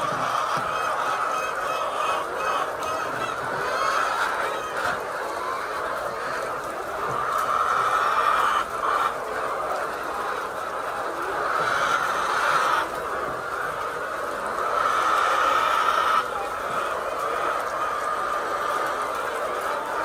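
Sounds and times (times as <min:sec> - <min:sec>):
poultry calling: 0:00.0 - 0:09.2.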